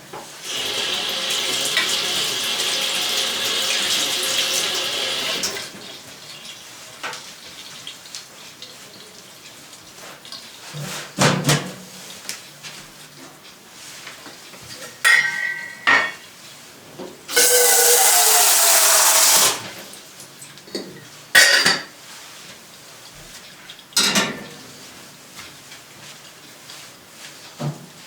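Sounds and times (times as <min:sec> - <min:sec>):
dishes and cutlery clinking: 0:14.7 - 0:16.3, 0:20.6 - 0:22.0, 0:24.0 - 0:24.6
loud steady hiss: 0:17.3 - 0:19.8.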